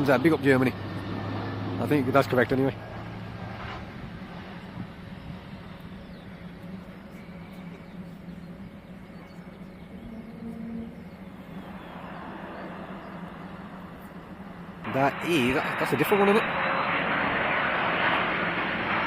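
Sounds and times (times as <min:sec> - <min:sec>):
vehicle passing by: 0:00.0 - 0:05.0
road traffic hum: 0:00.0 - 0:19.0.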